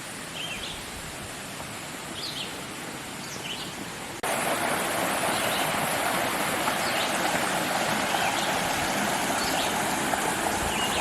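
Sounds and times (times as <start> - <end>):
brook rushing over rocks: 4.2 - 11.0.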